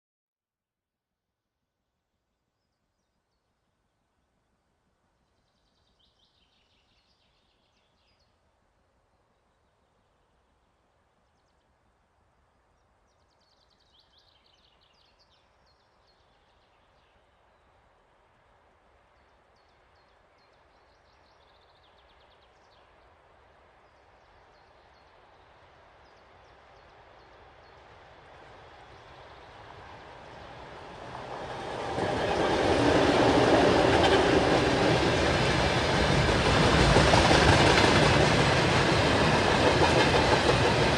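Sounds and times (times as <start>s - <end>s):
train rumbling: 27.0s - 40.9s.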